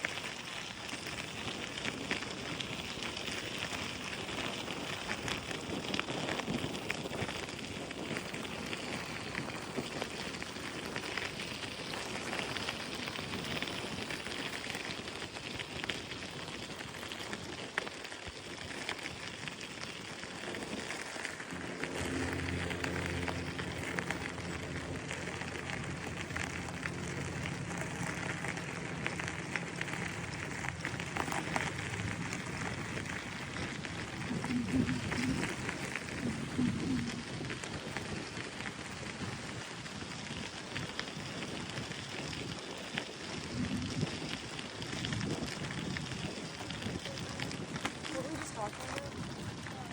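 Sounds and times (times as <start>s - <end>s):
bicycle tyres on path: 0.0s - 49.9s
wind on microphone: 20.6s - 49.9s
low multi-pitched hum: 21.3s - 37.2s.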